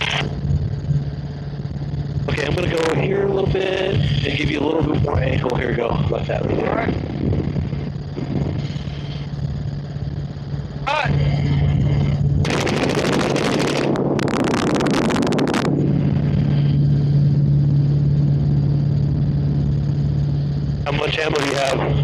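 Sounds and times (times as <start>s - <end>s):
helicopter drone: 0.0s - 22.0s
automatic rifle gunfire: 12.4s - 13.9s.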